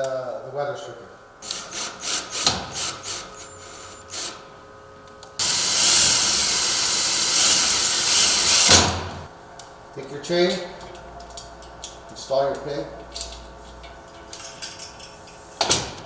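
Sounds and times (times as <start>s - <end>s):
power drill driving screw: 1.4s - 4.5s, 5.4s - 9.3s.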